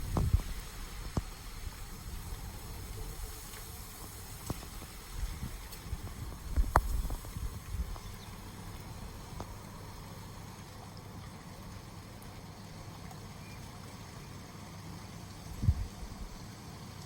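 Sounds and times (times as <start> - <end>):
wind gusting against microphone: 0.0 - 8.4, 15.5 - 16.4
light rain: 0.0 - 17.0.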